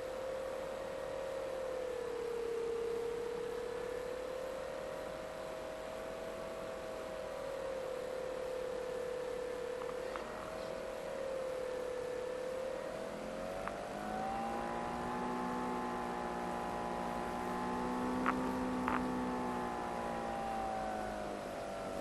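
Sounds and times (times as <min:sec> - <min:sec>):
model plane motor whining: 0:13.0 - 0:22.0.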